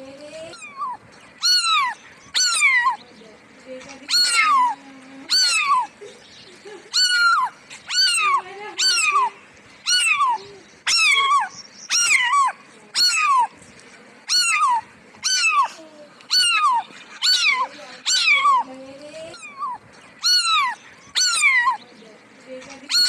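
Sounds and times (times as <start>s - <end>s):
cat meowing: 0.6s - 3.0s, 4.1s - 5.9s, 6.9s - 13.6s, 14.3s - 18.7s, 19.3s - 21.8s.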